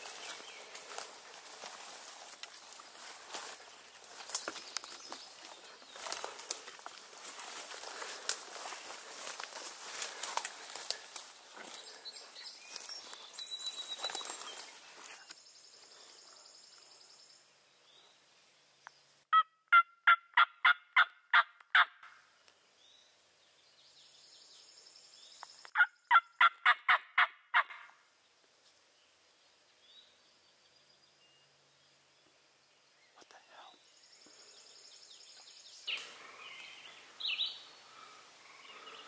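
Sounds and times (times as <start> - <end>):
footsteps in leaves: 0.0 - 15.3
turkey call yelps: 19.3 - 22.0, 25.8 - 27.9.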